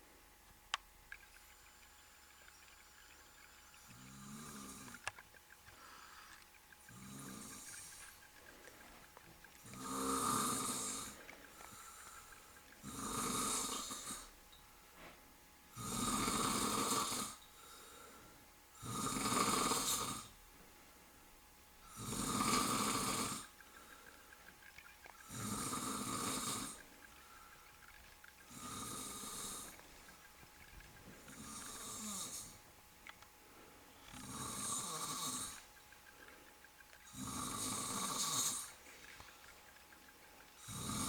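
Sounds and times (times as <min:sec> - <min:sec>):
man snoring heavily: 0:09.7 - 0:11.2, 0:12.8 - 0:14.3, 0:15.8 - 0:17.4, 0:18.8 - 0:20.3, 0:21.9 - 0:23.5, 0:25.3 - 0:26.8, 0:28.5 - 0:29.8, 0:31.3 - 0:32.6, 0:34.1 - 0:35.6, 0:37.1 - 0:38.8, 0:40.6 - 0:41.0.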